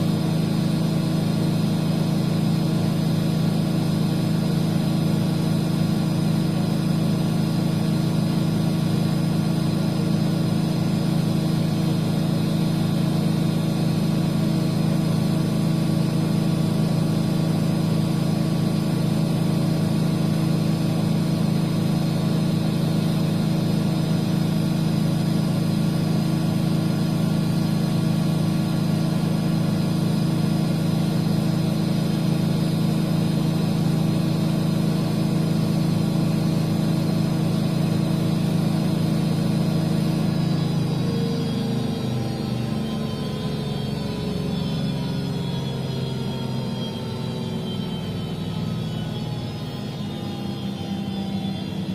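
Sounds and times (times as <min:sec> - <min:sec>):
washing machine motor hum: 0:00.0 - 0:51.9.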